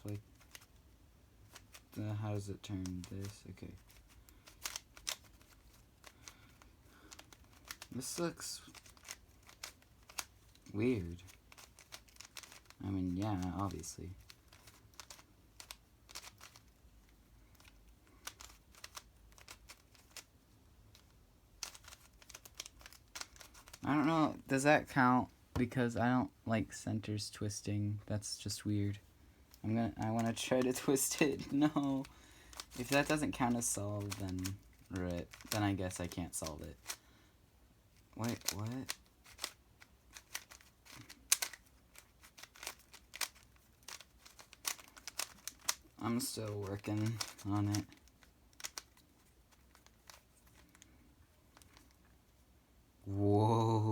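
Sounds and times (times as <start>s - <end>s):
puzzle cube clicking: 2.8s - 20.3s, 20.9s - 23.8s, 29.5s - 37.0s, 38.0s - 52.0s.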